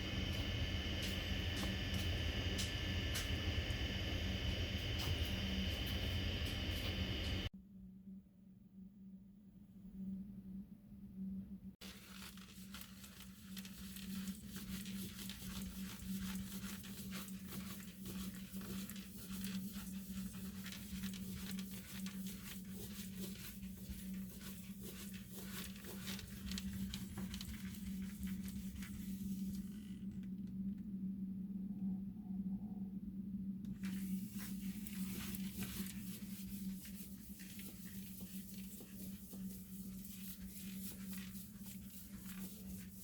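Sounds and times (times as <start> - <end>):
steady low hum: 0.0 - 43.0
crackling and rustling: 11.8 - 30.5, 33.8 - 43.0.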